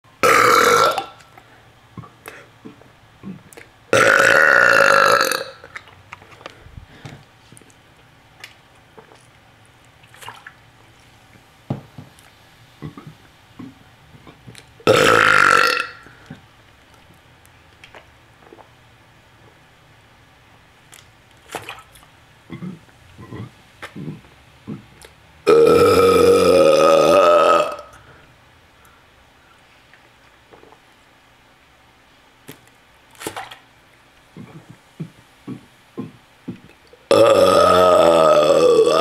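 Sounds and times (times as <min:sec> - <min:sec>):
person burping loudly: 0:00.2 - 0:01.2, 0:03.2 - 0:05.8, 0:14.8 - 0:16.2, 0:25.4 - 0:28.0, 0:37.0 - 0:39.0.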